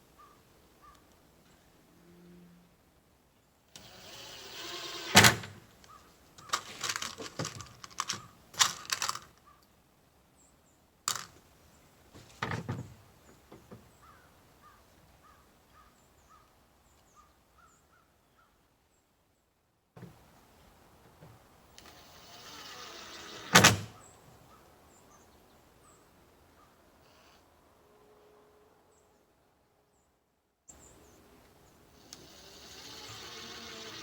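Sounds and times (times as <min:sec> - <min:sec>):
drill sharp click: 0:03.8 - 0:05.7, 0:21.8 - 0:24.0, 0:32.0 - 0:34.0
cordless drill motor running: 0:03.8 - 0:05.8, 0:21.8 - 0:24.1, 0:31.9 - 0:34.0.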